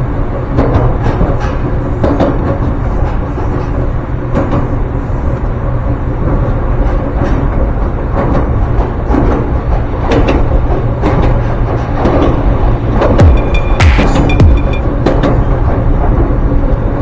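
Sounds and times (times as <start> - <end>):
sharp clicks: 13.2 - 14.8.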